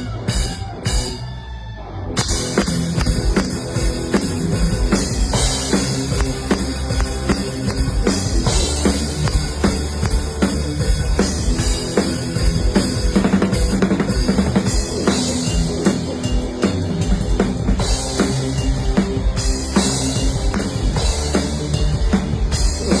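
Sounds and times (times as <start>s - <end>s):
rock band playing live: 0.0s - 23.0s.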